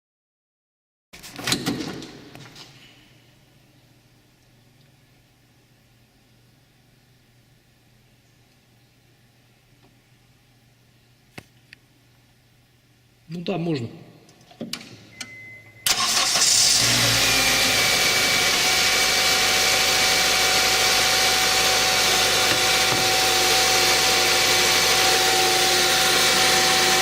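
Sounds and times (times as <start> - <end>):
car engine starting and idling: 15.8 - 27.0.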